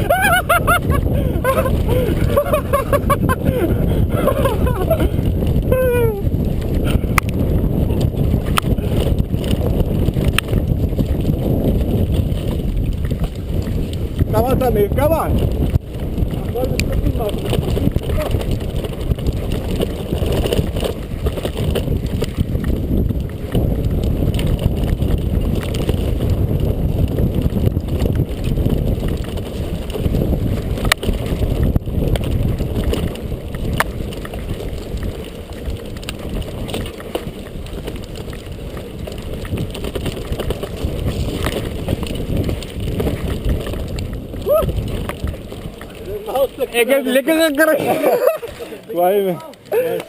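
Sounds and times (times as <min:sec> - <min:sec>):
bike tyres rolling on dirt: 0:00.0 - 0:50.0
wind noise on microphone: 0:00.0 - 0:50.0
bike clicks and knocks: 0:06.3 - 0:14.3, 0:15.3 - 0:46.6.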